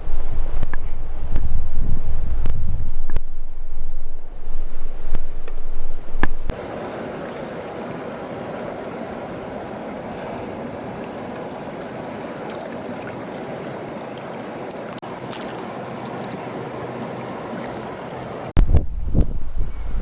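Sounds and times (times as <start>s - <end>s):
wind buffeting microphone: 0.0s - 6.6s, 18.6s - 20.0s
river water rushing: 0.0s - 18.5s.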